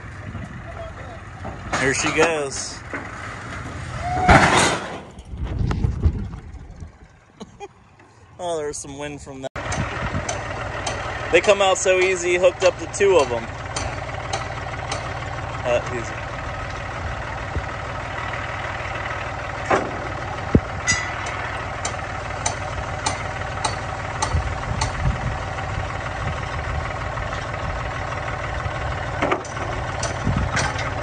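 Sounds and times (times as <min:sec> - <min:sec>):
vehicle engine idling: 0:00.0 - 0:04.4, 0:05.0 - 0:31.0
sharp clicks and knocks: 0:09.7 - 0:11.2, 0:11.9 - 0:15.3, 0:19.6 - 0:25.1, 0:29.2 - 0:31.0.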